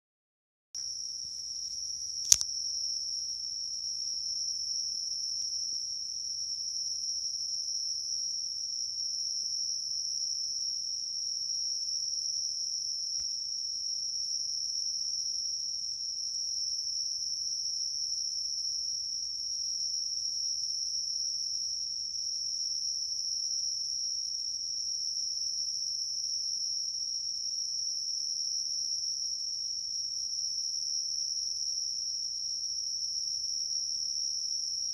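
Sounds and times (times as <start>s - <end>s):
insect trilling: 1.6s - 2.6s
sharp click: 2.2s - 2.5s.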